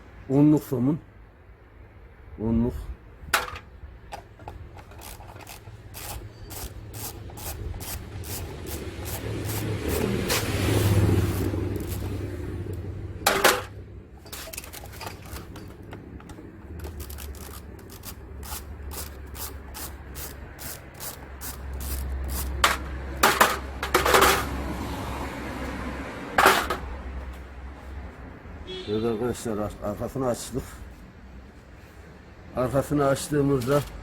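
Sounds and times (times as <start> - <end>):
ratchet clicking: 4.8 - 10.4, 11.2 - 12.8, 14.3 - 22.8
metal clanks: 13.2 - 17.4, 22.6 - 24.6, 26.4 - 26.9.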